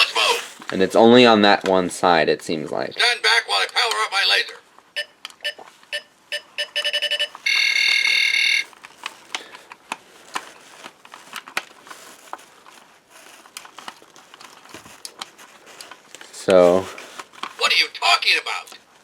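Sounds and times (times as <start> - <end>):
toy electronic beeps: 5.0 - 8.7
toy electronic buzzing tone: 6.8 - 8.7.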